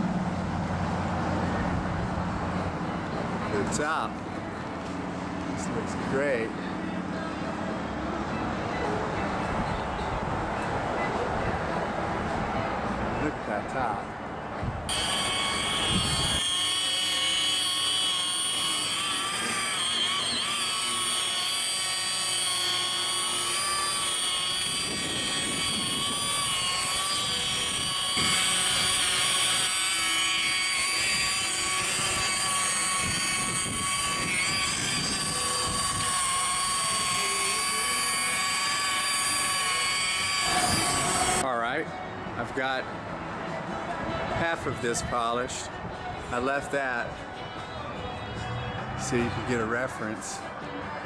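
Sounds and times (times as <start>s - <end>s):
rotary polisher whining: 14.9s - 41.4s.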